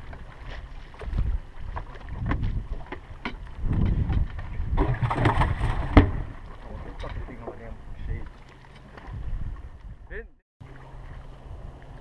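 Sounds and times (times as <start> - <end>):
wind buffeting microphone: 0.9 - 10.3.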